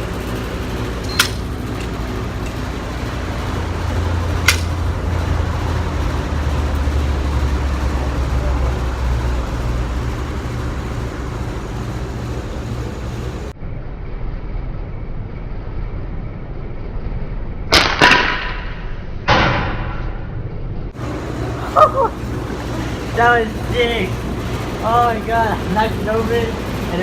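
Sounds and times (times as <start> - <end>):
pellet gun shot: 1.1 - 1.5, 4.4 - 4.8, 17.7 - 18.7.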